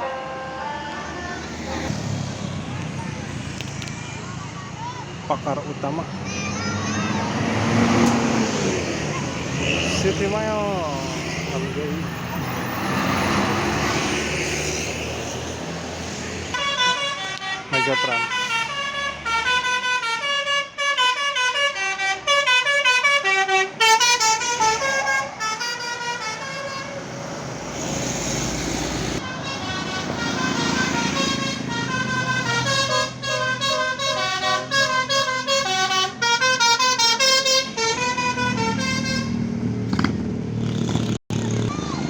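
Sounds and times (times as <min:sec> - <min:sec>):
multi-tone bus horn melody: 0:00.0 - 0:01.2, 0:16.5 - 0:27.0, 0:29.2 - 0:39.5
bus engine rumbling: 0:00.0 - 0:42.0.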